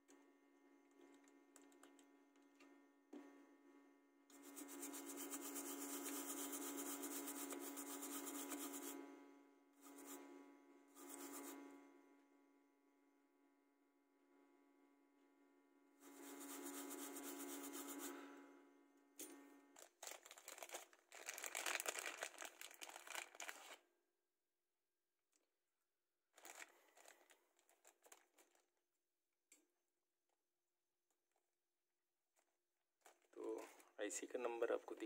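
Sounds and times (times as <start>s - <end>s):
plastic wrapping crinkling: 19.8s - 23.8s, 26.4s - 28.7s.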